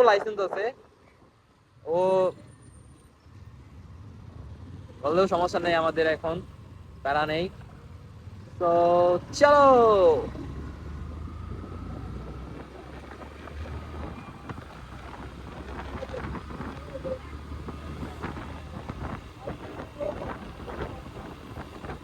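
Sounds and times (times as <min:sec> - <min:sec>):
motorcycle engine hum: 0:00.0 - 0:22.0
road and traffic noise: 0:00.0 - 0:22.0
wind buffeting microphone: 0:09.0 - 0:22.0.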